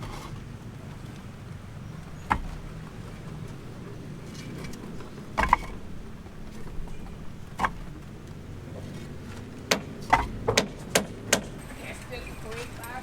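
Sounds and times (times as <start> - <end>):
sharp knocks: 2.2 - 2.8, 4.5 - 8.1, 9.7 - 11.6.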